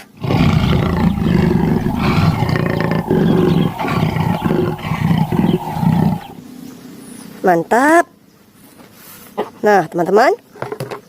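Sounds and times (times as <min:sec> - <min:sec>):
big cat roaring and growling: 0:00.0 - 0:06.4.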